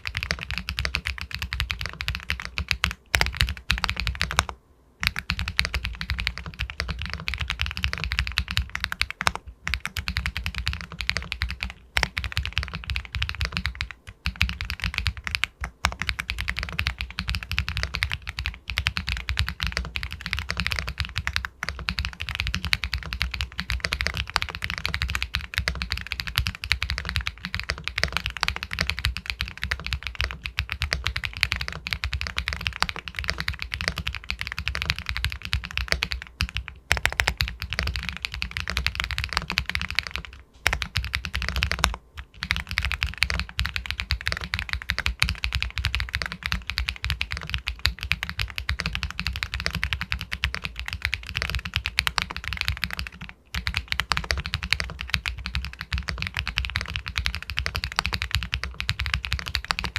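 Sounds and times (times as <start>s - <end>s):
fast typing on mechanical keyboard: 0.0s - 59.9s.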